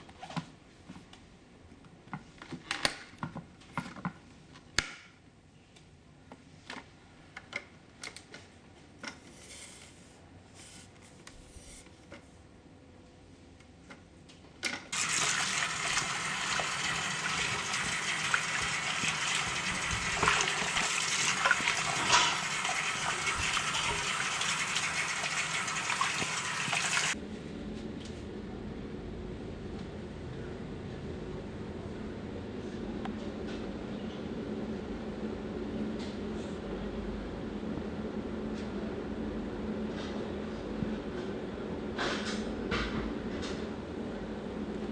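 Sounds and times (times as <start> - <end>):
running water rushing: 15.0 - 27.2.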